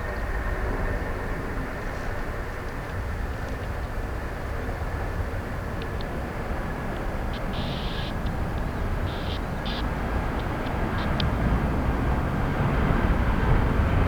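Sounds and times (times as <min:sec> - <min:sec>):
jet aircraft rumble: 0:00.0 - 0:14.0
faint high ticks: 0:07.3 - 0:11.4.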